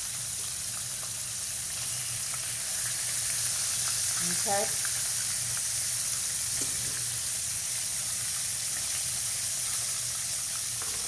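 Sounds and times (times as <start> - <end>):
cutlets sizzling in oil: 0.0 - 11.0.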